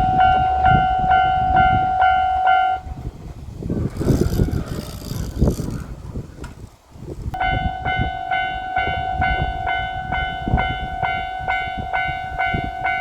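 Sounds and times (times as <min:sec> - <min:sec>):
level crossing warning bell: 0:00.0 - 0:02.9, 0:07.4 - 0:13.0.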